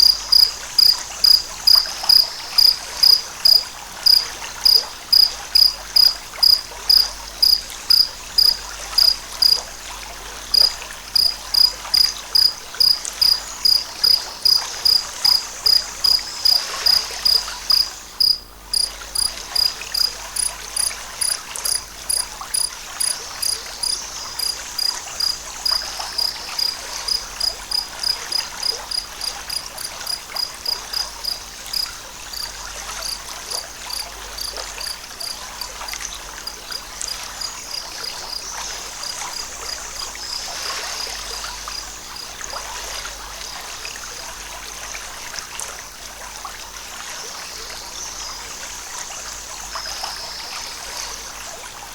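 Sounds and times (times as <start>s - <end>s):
cricket chirping: 0.0s - 9.7s, 10.5s - 42.4s.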